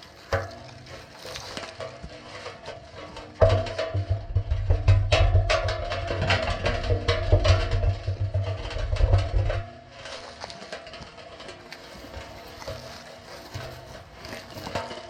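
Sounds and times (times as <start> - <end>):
music with heavy bass and drums: 3.4 - 9.6.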